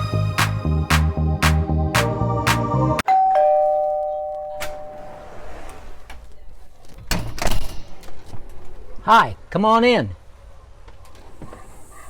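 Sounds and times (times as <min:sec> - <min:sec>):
background music with beat: 0:00.0 - 0:03.0
two-note doorbell chime: 0:02.9 - 0:05.3.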